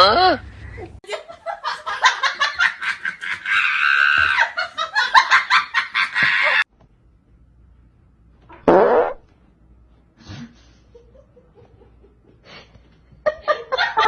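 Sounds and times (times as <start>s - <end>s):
high-pitched laughter: 1.1s - 6.7s.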